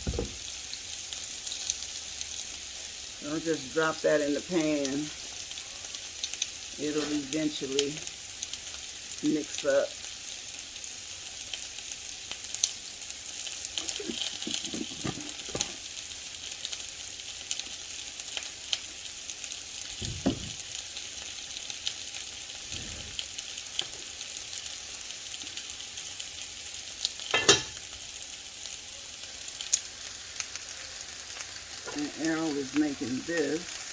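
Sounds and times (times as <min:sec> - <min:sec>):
chicken sizzling in oil: 0:00.0 - 0:33.9
soft knocks: 0:20.0 - 0:20.6.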